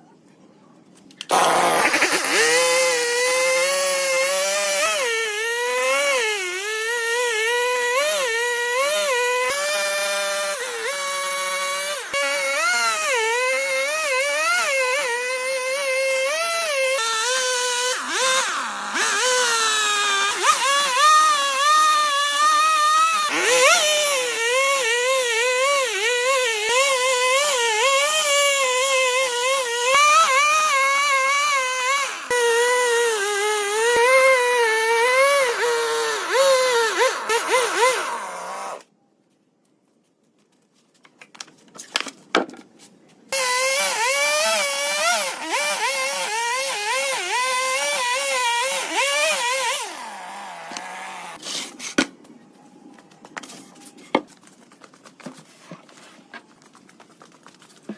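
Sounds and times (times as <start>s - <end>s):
power tool cutting wood: 1.2s - 38.8s, 43.4s - 51.6s.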